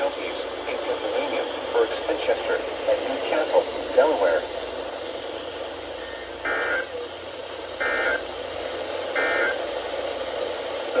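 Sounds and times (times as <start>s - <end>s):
steady radio hiss: 0.0s - 11.0s
digital data tone bursts: 6.0s - 6.9s, 7.8s - 8.2s, 9.2s - 9.6s.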